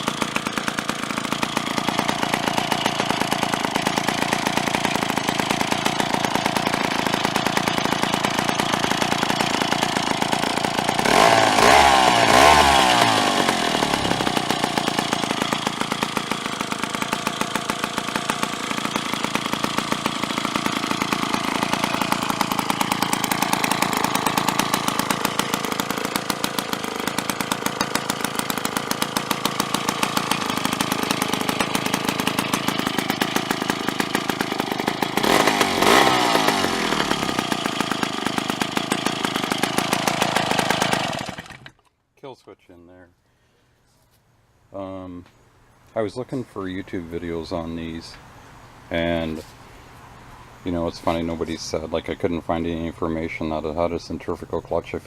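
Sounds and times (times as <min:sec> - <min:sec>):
chainsaw engine idling and revving: 0:00.0 - 0:41.9.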